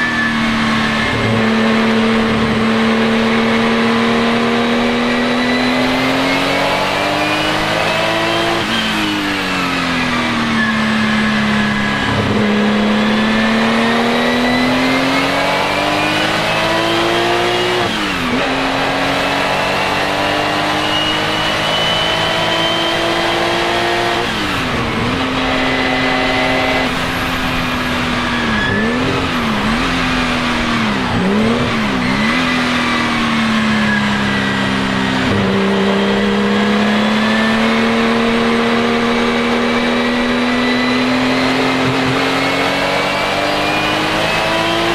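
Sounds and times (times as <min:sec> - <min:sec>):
racing engine revving: 0:00.0 - 0:44.9.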